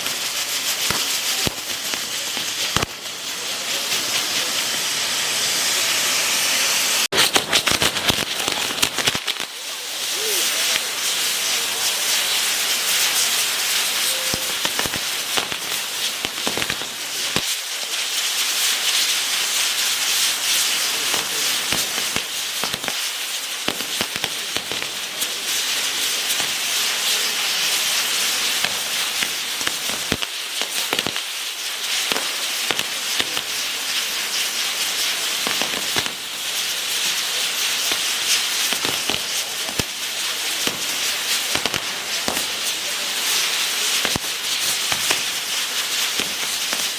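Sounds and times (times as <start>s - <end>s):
fireworks crackling and popping: 0.0s - 46.9s
fireworks hissing: 0.0s - 46.9s.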